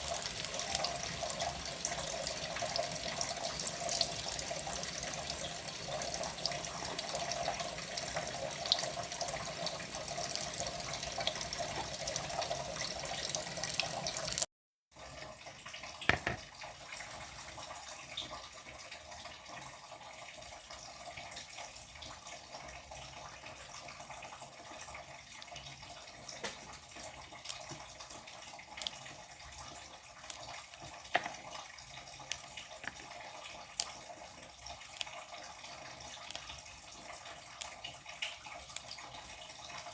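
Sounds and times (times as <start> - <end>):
tap water running into sink: 0.0 - 25.0, 25.8 - 39.8.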